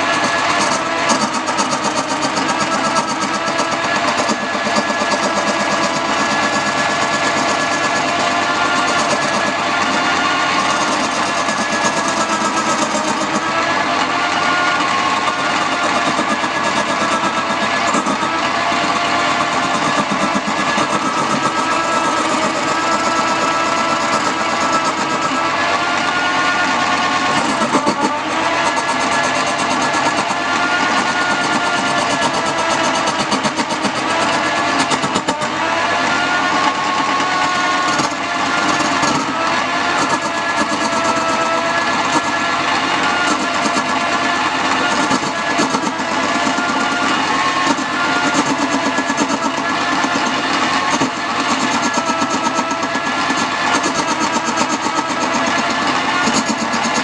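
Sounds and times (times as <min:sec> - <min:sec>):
lathe motor with fast ticking: 0:00.0 - 0:57.0
steady whining tones: 0:00.0 - 0:57.0.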